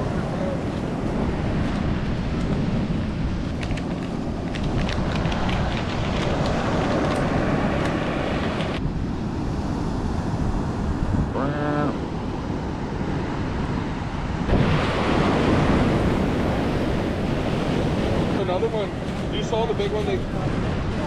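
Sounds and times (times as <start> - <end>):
breaking surf: 0.0 - 8.8, 13.4 - 21.0
wind across microphone: 0.0 - 21.0.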